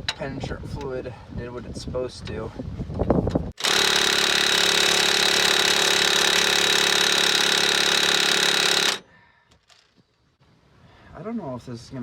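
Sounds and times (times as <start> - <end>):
impact wrench hammering: 3.6 - 9.1.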